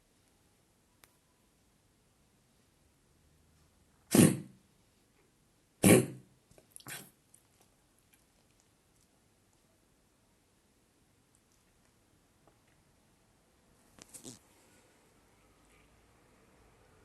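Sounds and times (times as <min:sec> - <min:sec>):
dog coughing: 0:04.1 - 0:04.6, 0:05.8 - 0:06.2, 0:06.8 - 0:07.1.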